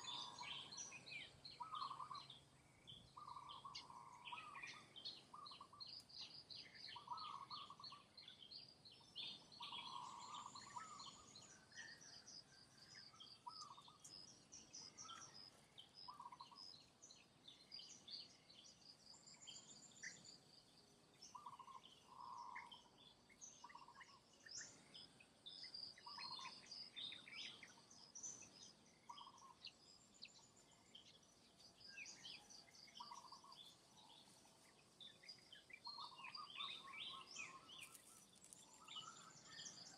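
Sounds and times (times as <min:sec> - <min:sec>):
birds chirping and trilling: 0:00.0 - 0:39.9.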